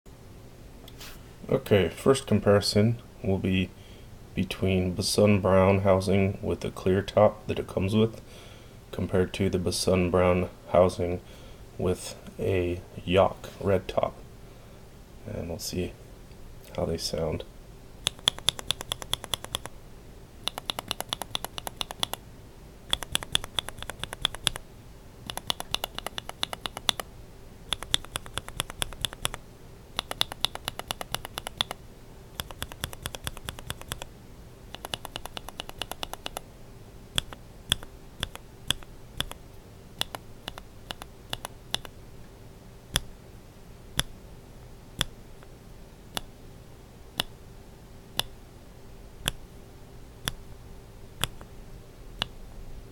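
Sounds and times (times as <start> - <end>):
keyboard keys clicking: 18.0 - 19.7, 20.4 - 22.2, 22.9 - 24.6, 25.3 - 27.1, 27.7 - 29.4, 30.0 - 31.8, 32.4 - 34.1, 34.7 - 36.4, 37.2 - 39.4, 40.0 - 41.9.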